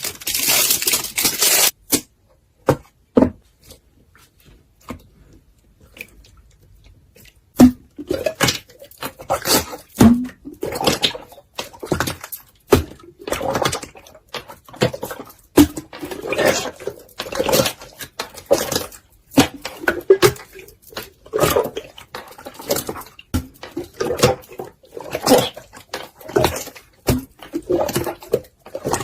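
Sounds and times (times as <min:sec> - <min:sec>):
slime squelching and popping: 0:04.6 - 0:29.0.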